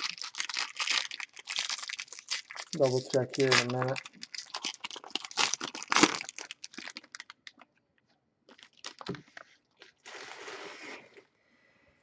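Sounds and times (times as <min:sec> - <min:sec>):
card packaging crinkling: 0:00.0 - 0:07.6, 0:08.5 - 0:10.0.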